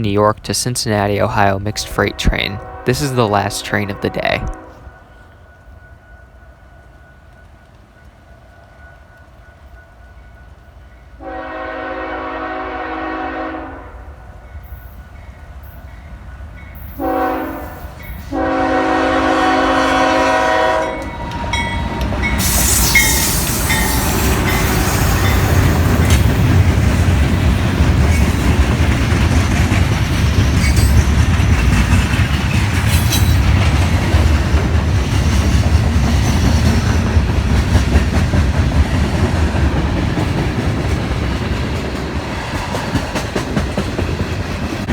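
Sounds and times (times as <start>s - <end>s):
freight train passing: 0.0s - 44.9s
locomotive air horn: 1.8s - 5.0s, 11.2s - 14.0s, 17.0s - 25.5s.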